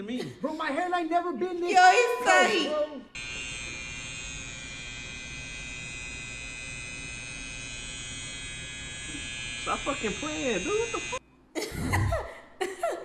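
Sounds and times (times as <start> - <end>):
hair clippers buzzing: 3.2 - 11.2.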